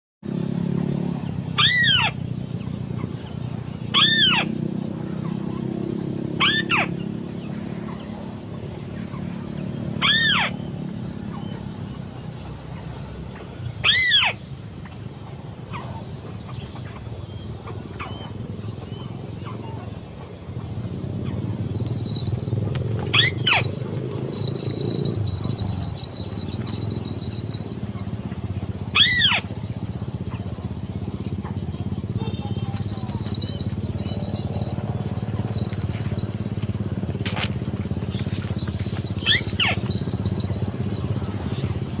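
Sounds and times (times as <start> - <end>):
bird calling: 1.5 - 8.3, 10.0 - 11.8, 12.8 - 14.5, 15.7 - 42.0
steady low rumble: 29.6 - 42.0.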